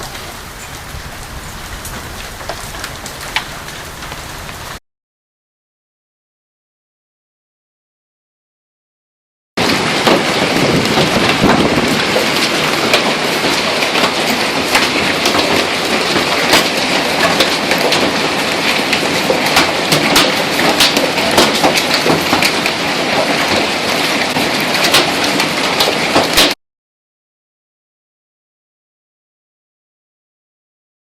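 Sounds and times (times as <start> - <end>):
hail pelting down: 0.0 - 4.8, 9.6 - 26.6.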